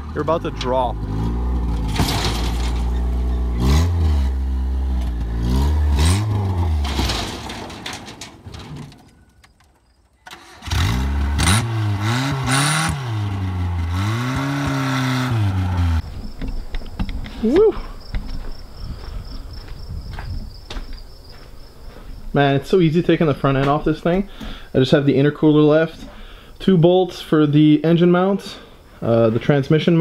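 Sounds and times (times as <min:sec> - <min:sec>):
small car engine revving: 0:00.0 - 0:07.4, 0:10.3 - 0:16.0.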